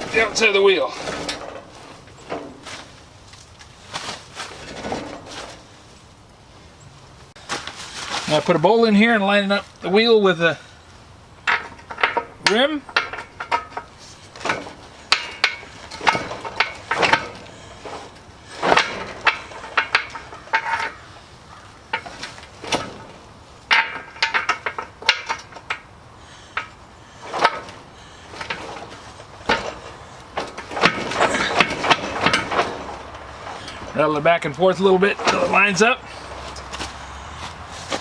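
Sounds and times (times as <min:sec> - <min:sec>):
steel rim knocking against wheel: 0:11.4 - 0:25.9.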